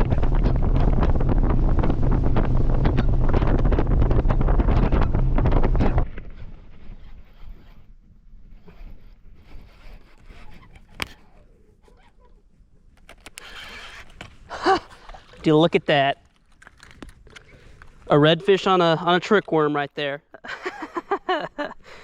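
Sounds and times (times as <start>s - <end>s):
wind buffeting microphone: 0.0s - 11.4s.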